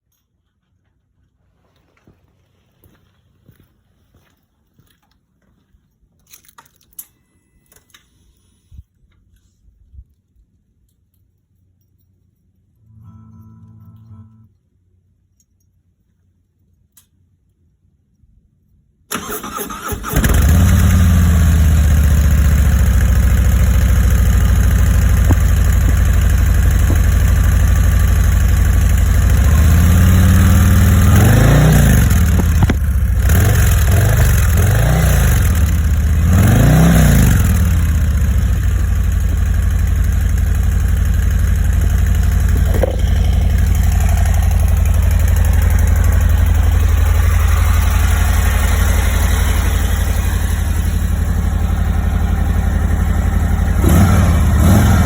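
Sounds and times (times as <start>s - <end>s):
motorcycle engine starting and idling: 19.1s - 55.0s
engine revving: 19.2s - 55.0s.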